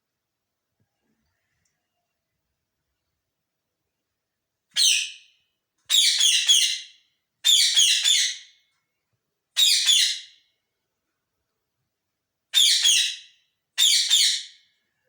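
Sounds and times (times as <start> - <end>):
parrot squawking: 5.9 - 8.4, 9.6 - 10.3, 12.6 - 13.2, 13.8 - 14.5.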